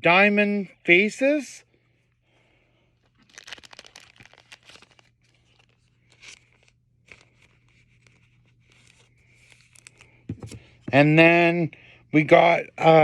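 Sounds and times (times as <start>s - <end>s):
plastic packaging crinkling: 3.0s - 8.9s.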